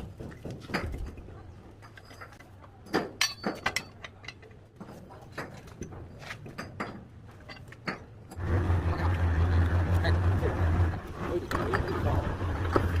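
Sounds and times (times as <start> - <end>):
tools and building materials clinking: 0.0 - 8.4, 11.5 - 13.0.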